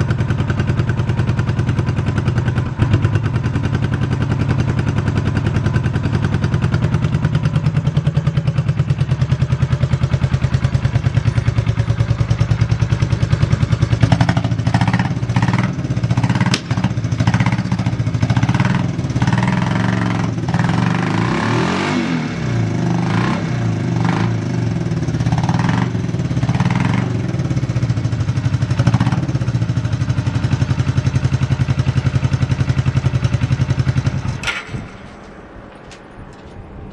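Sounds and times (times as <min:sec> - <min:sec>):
motorcycle engine revving and idling: 0:00.0 - 0:35.2
engine switch click: 0:16.5 - 0:16.9.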